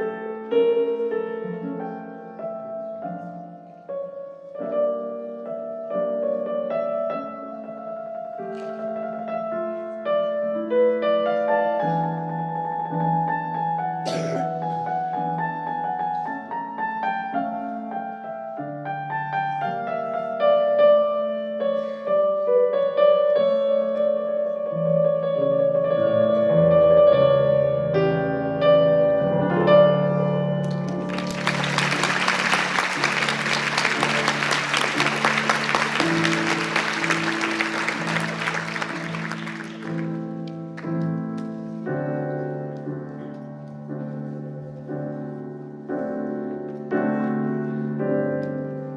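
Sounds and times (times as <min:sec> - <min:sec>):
piano music: 0:00.0 - 0:48.9
audience applause: 0:30.6 - 0:40.2.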